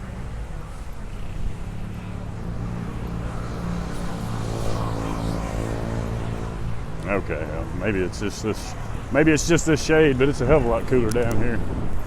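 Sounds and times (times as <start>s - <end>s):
engine humming: 0.0s - 11.8s.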